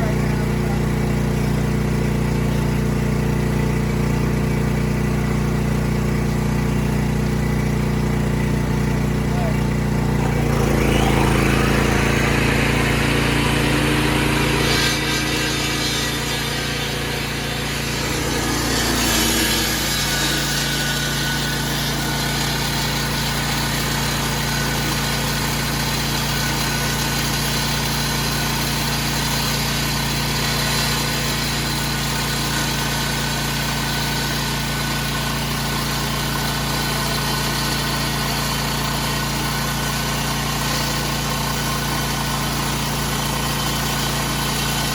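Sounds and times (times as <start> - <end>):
generator engine running: 0.0 - 44.9
harsh loud noise: 10.2 - 24.5.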